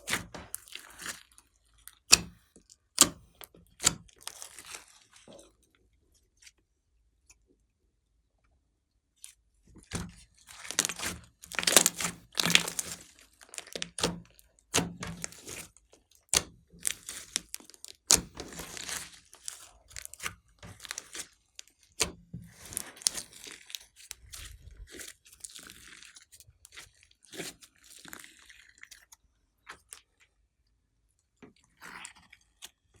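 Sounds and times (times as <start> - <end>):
slime squished with crackles and pops: 0.0 - 5.4, 9.9 - 30.0.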